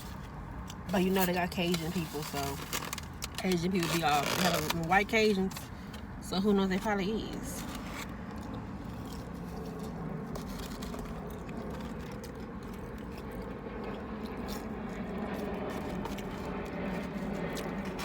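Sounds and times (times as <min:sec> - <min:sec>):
chewing and biting food: 0:00.0 - 0:04.8, 0:07.4 - 0:18.0
car interior hum: 0:00.8 - 0:09.2.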